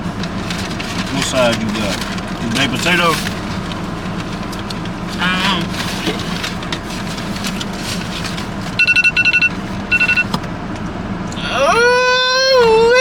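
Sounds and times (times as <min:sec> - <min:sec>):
car engine hum in cabin: 0:00.0 - 0:13.0
rapid electronic beeps: 0:08.8 - 0:10.3.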